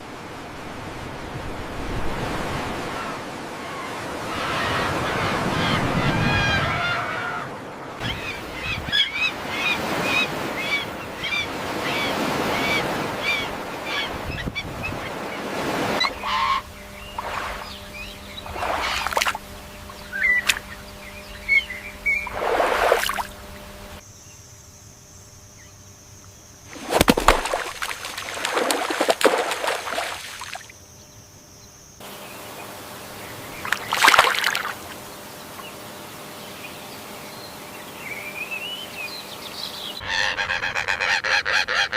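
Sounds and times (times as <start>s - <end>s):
bird chirping rapidly: 16.0s - 22.4s.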